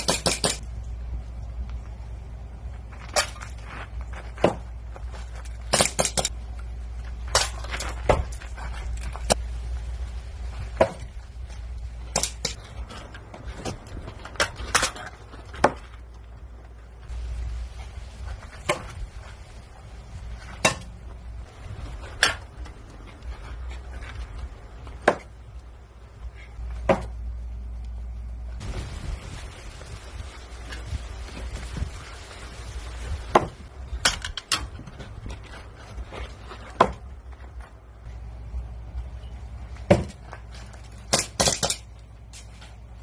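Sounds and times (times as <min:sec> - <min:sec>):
low steady rumble: 0:00.0 - 0:43.0.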